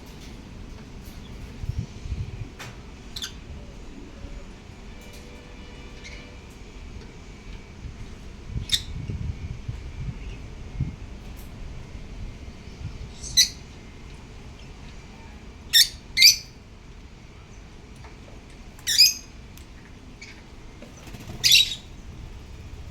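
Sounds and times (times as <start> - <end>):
lovebirds chirping: 21.1 - 22.2.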